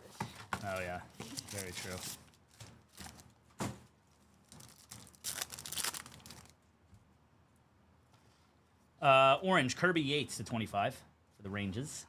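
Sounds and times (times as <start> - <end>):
foil wrapper crinkling and tearing: 0.7 - 3.3, 4.4 - 6.6.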